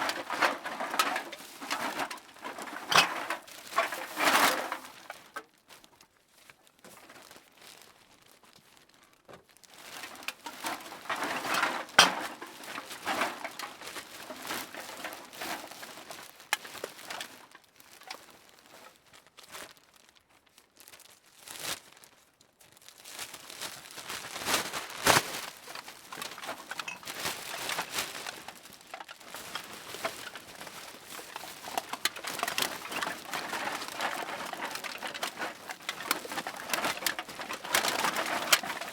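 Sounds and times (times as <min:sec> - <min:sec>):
bag rustling: 0:23.0 - 0:38.9.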